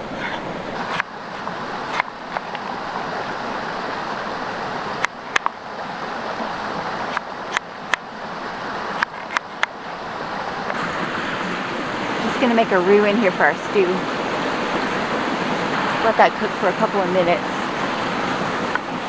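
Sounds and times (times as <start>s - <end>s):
creek water rushing: 0.0s - 19.0s.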